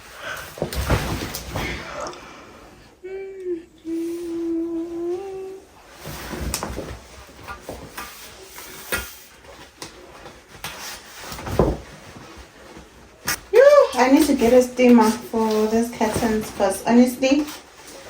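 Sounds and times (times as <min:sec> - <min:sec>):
curtains rustling and clicking: 0:00.0 - 0:02.0, 0:05.8 - 0:18.0
person humming a note: 0:03.0 - 0:05.6.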